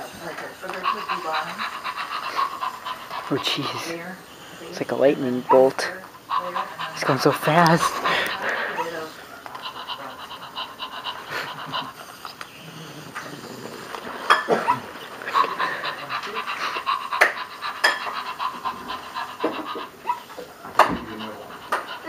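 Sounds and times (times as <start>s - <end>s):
electronic dog panting: 0.0s - 22.0s.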